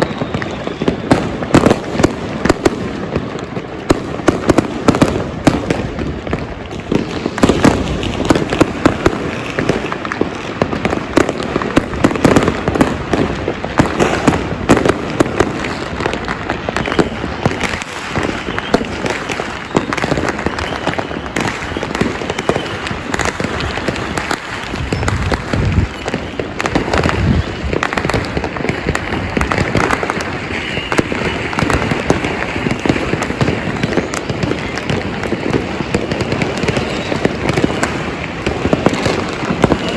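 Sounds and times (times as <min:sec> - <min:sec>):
fireworks and firecrackers crackling: 0:00.0 - 0:39.9
loud firework booms: 0:00.0 - 0:39.9.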